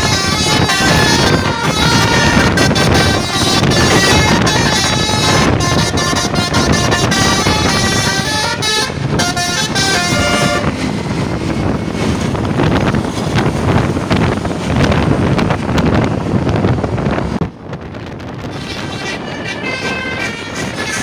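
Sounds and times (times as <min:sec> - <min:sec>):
musical air horn playing tune: 0:00.0 - 0:10.9, 0:19.2 - 0:21.0
vehicle noise: 0:00.0 - 0:21.0
wind on microphone: 0:00.0 - 0:21.0.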